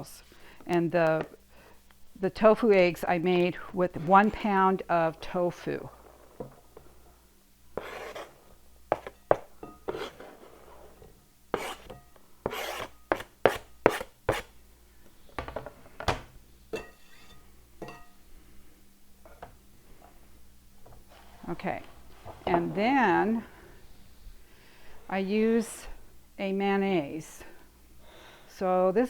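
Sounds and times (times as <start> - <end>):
rubbing and scraping: 7.8 - 9.3, 9.9 - 11.0, 11.6 - 14.5.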